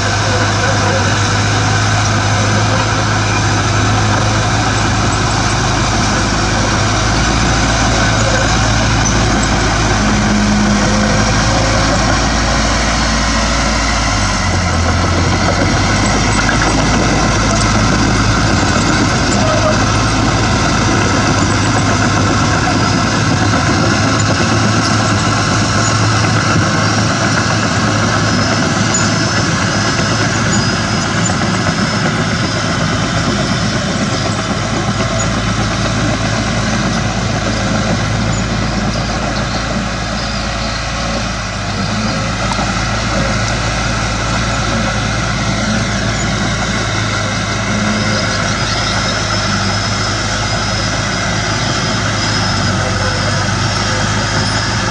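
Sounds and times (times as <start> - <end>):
diesel earthmoving machinery drone: 0.0 - 54.9.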